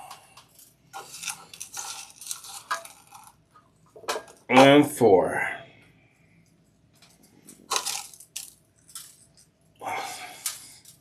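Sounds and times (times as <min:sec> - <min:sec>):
crunchy salt rasps: 0:00.0 - 0:03.4.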